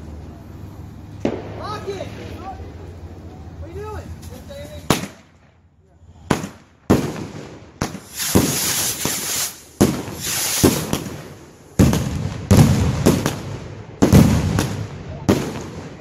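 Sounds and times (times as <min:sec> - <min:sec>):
firework bangs: 0:01.0 - 0:16.0
crackling hiss: 0:06.1 - 0:13.7.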